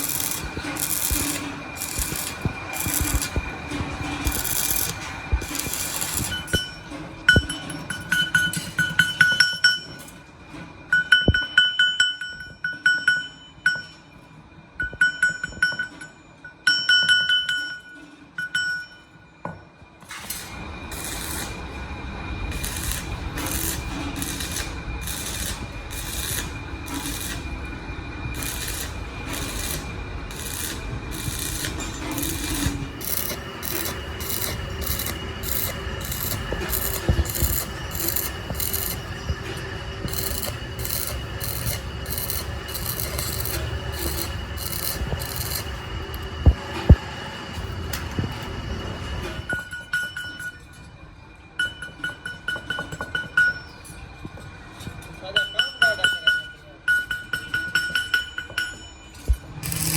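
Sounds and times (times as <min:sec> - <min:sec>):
hand file rasping metal: 0:28.4 - 0:39.1, 0:40.0 - 0:45.7.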